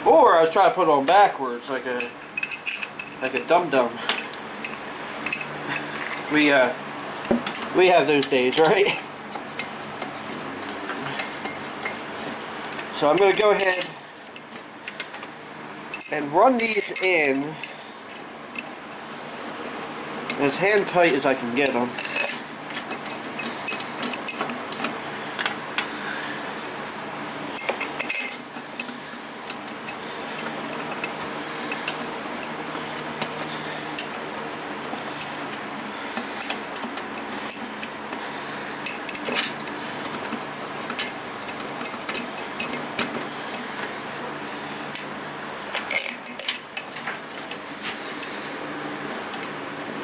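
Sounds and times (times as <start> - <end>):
metal parts clinking: 2.0 - 14.6, 15.9 - 18.7, 19.6 - 26.0, 27.6 - 44.2, 44.8 - 49.7.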